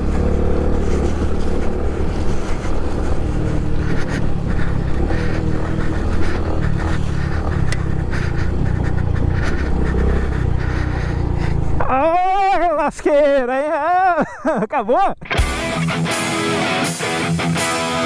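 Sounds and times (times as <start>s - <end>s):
motorcycle engine running: 0.0s - 12.9s.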